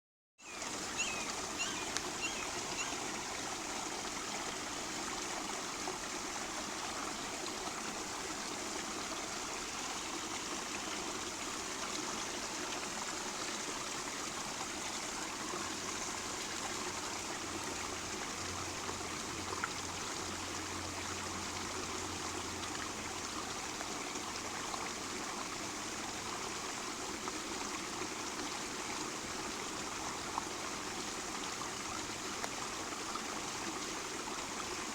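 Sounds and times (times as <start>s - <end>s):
creek water rushing: 0.4s - 34.9s
water trickling: 0.4s - 34.9s.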